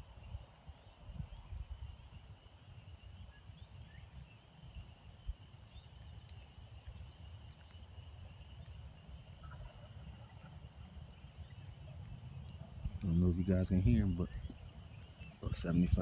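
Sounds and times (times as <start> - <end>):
low rumble on microphone: 11.4 - 16.0.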